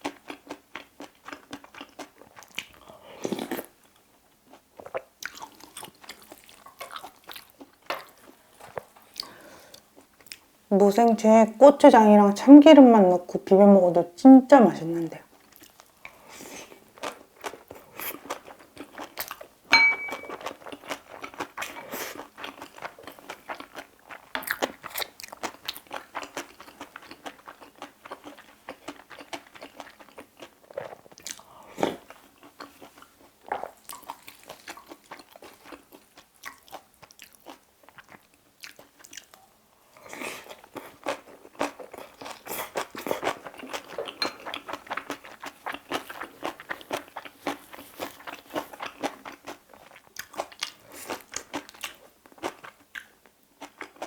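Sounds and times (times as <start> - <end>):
close chewing and crunching: 0.0 - 10.5, 15.2 - 19.6, 20.2 - 54.0
sharp ringing tap: 19.8 - 20.3.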